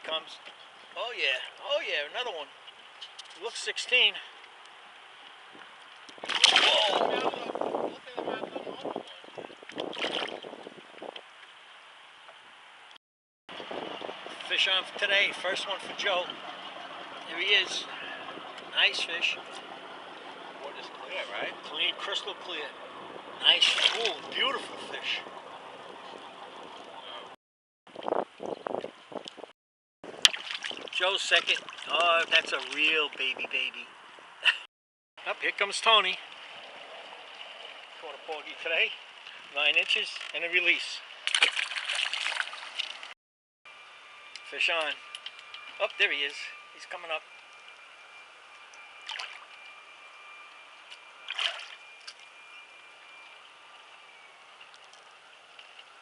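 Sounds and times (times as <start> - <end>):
water around a boat: 0.0 - 29.5, 30.1 - 56.0
wind: 0.0 - 56.0
water splashing: 4.5 - 7.5, 9.6 - 10.6, 23.4 - 25.0, 30.2 - 33.0, 41.2 - 43.1, 49.0 - 49.6, 50.9 - 52.3
thin steady whine: 13.9 - 27.4, 43.7 - 56.0.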